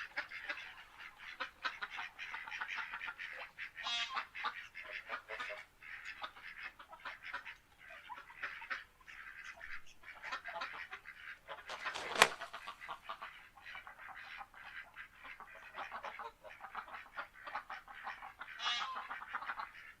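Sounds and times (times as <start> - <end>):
ducks quacking: 0.0 - 20.0.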